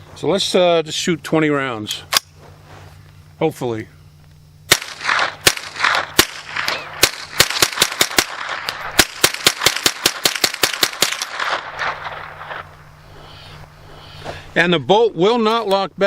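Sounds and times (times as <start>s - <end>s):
rifle firing rapidly: 4.7s - 12.7s.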